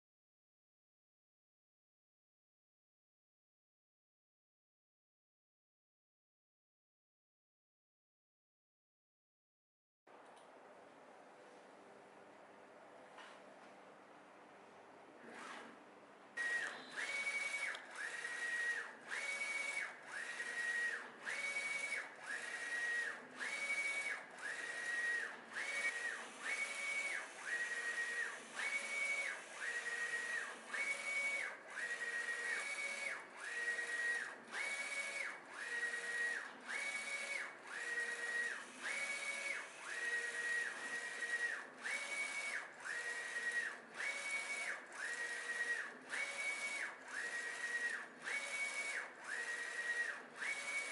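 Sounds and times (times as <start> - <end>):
printer carriage motor whine: 16.4 - 50.9.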